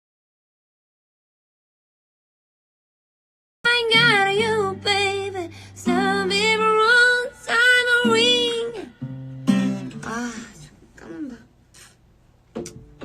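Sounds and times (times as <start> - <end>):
woman singing with vibrato: 3.7 - 9.1, 9.7 - 11.4.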